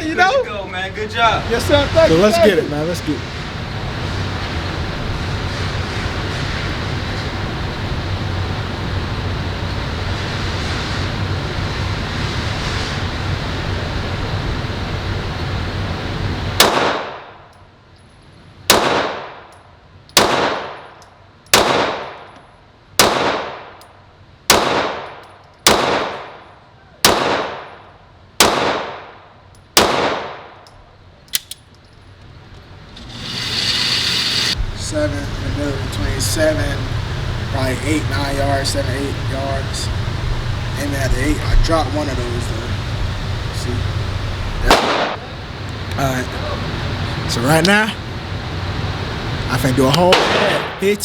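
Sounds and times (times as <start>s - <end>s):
steady rushing noise: 0.0s - 17.3s, 32.3s - 51.0s
pistol shots echoing: 16.6s - 17.3s, 18.7s - 19.5s, 20.2s - 20.9s, 21.5s - 22.3s, 23.0s - 23.8s, 24.5s - 26.4s, 27.0s - 27.8s, 28.4s - 29.2s, 29.8s - 30.6s, 44.7s - 45.2s, 50.1s - 50.8s.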